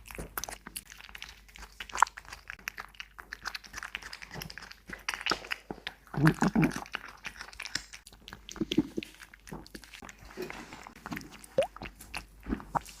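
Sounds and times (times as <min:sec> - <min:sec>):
cat chewing food: 0:00.0 - 0:13.0.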